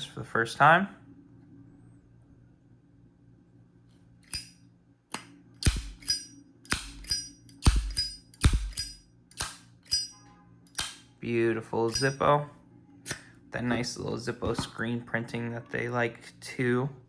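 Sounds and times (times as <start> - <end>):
lighter lid clicking open and shut: 4.2 - 4.5, 5.1 - 10.1, 10.7 - 11.0, 11.9 - 12.2.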